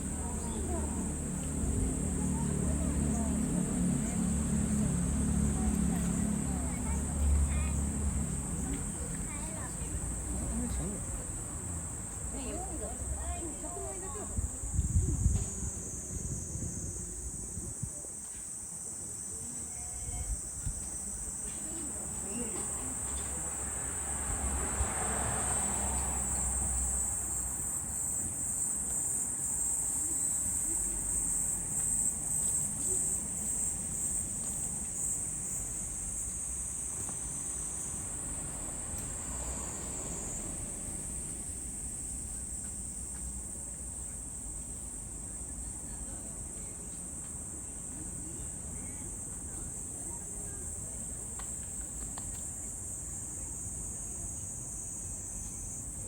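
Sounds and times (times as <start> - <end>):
insects shrill drone: 0.0 - 45.5.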